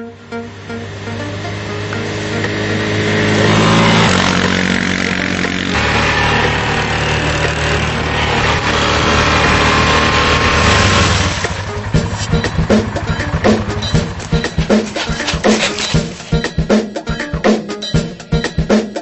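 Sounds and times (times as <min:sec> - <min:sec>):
electronic music with distorted bass: 0:11.1 - 0:16.8.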